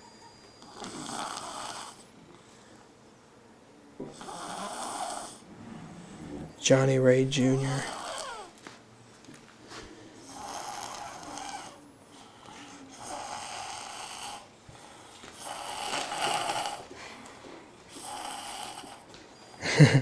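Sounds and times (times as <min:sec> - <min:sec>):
boy snoring: 0:00.6 - 0:02.1, 0:04.1 - 0:06.6, 0:07.6 - 0:08.5, 0:10.2 - 0:11.8, 0:12.8 - 0:14.5, 0:15.3 - 0:16.9, 0:17.9 - 0:19.9.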